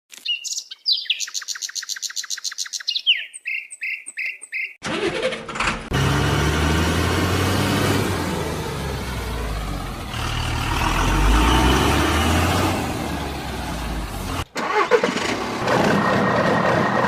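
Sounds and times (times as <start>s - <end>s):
bird chirping trill: 0.1s - 4.8s.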